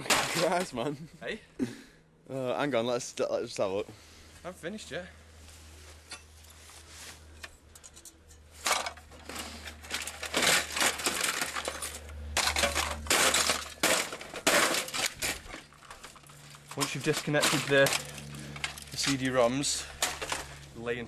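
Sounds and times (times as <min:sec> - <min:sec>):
computer parts clattering: 0:00.0 - 0:00.8, 0:07.7 - 0:21.0
low steady hum: 0:00.0 - 0:21.0.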